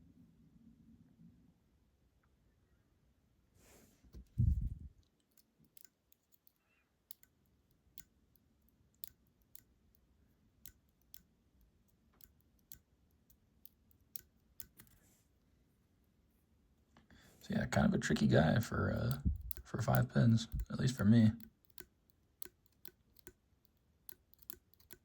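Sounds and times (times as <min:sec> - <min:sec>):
small metal clicks and taps: 0:05.0 - 0:15.0, 0:19.0 - 0:25.0.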